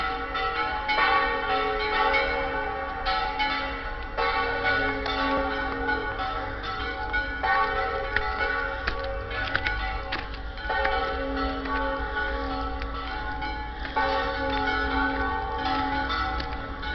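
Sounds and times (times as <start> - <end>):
church bells ringing: 0.0 - 16.9.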